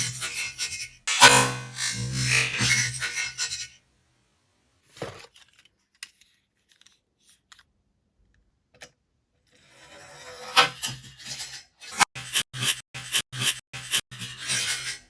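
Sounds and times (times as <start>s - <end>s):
scraping rubbing sound: 1.1s - 2.9s.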